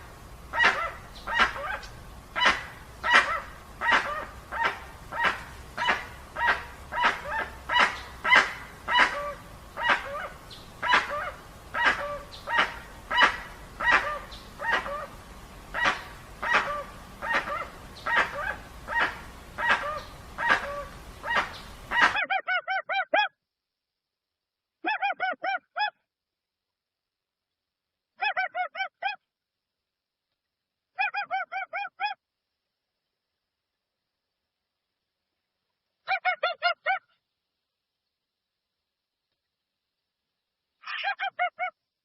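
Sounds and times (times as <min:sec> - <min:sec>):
bird making loud harsh calls: 0:00.5 - 0:23.0.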